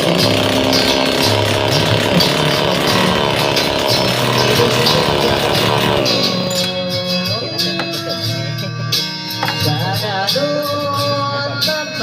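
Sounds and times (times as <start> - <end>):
grass cutter engine running: 0.0 - 8.6
song playing: 0.0 - 12.0.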